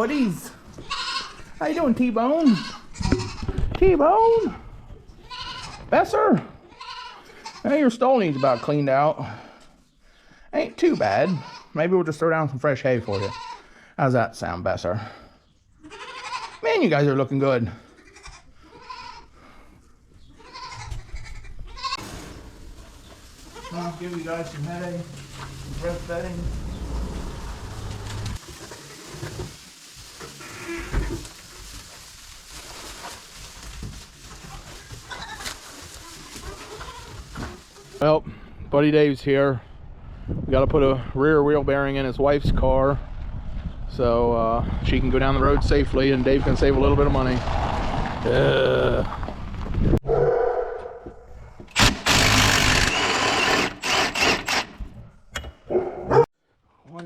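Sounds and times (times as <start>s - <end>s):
rustling: 19.2s - 38.0s
power tool running in bursts: 51.8s - 54.7s.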